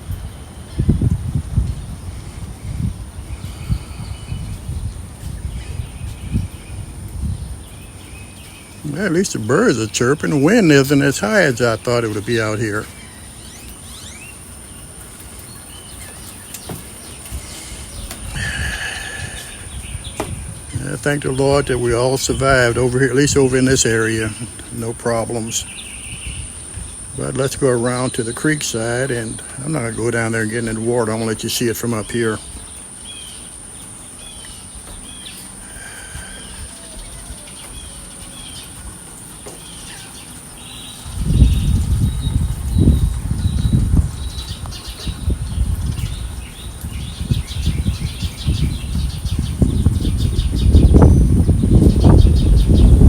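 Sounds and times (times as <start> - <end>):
wind rumble on microphone: 0.0 - 27.8, 40.1 - 53.0
birds chirping: 0.0 - 53.0
harsh bird call: 15.9 - 26.6.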